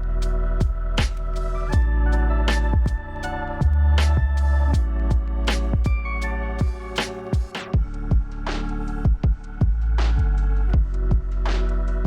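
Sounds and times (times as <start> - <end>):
electronic music with steady beat: 0.0 - 12.0.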